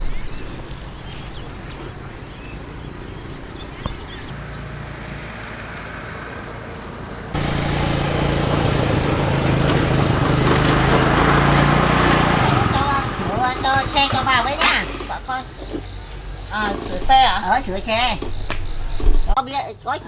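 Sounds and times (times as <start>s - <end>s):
vehicle engine running: 4.0s - 19.4s.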